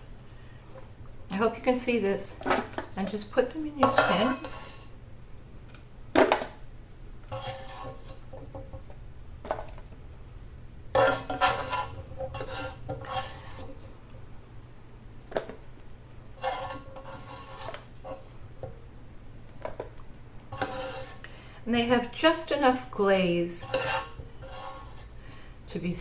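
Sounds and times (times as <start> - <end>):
utensil scraping and clinking on pan: 3.8 - 4.9, 7.3 - 8.8, 10.9 - 13.8, 16.4 - 18.3, 20.5 - 21.2, 23.4 - 25.1.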